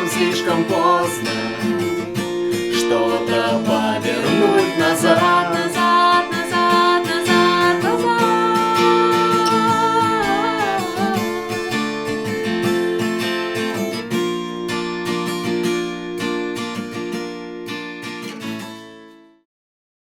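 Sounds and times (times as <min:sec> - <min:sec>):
acoustic guitar strumming: 0:00.0 - 0:19.3.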